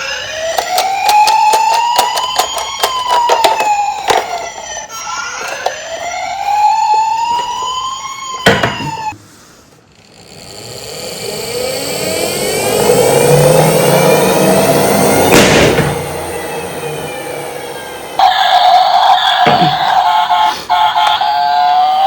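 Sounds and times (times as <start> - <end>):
toy electronic wail siren: 0.0 - 9.2, 10.2 - 22.0
rising whine: 10.0 - 18.4
loud bang: 13.8 - 17.4
sharp crack: 15.2 - 16.4.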